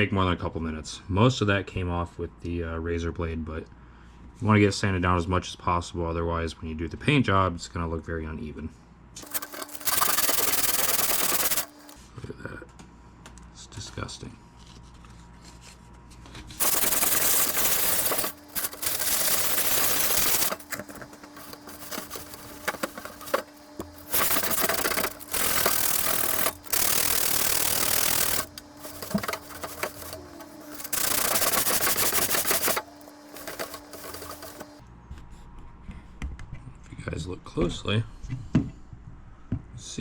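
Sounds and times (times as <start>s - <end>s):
electric sander grinding metal: 16.6s - 34.8s.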